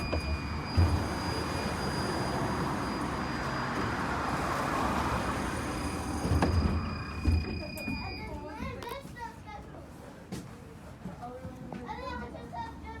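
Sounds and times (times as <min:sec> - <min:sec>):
lower whistle: 0:00.0 - 0:04.1
tram rumbling and rolling: 0:00.0 - 0:09.8.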